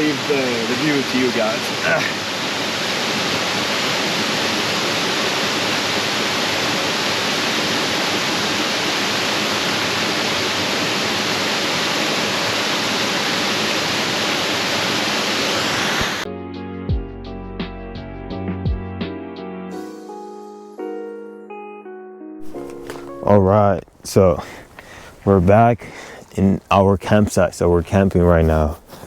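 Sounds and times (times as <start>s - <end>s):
waterfall rushing: 0.0s - 16.2s, 22.4s - 26.9s.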